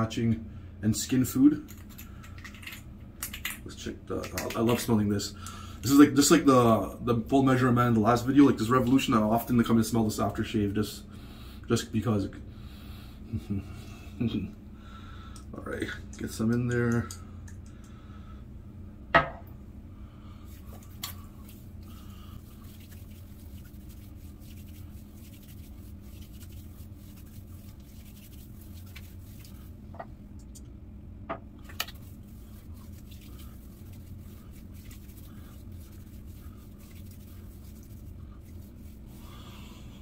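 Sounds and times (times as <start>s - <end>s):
room hum: 0.0s - 40.0s
bottle knocks and clicks: 19.2s - 19.4s.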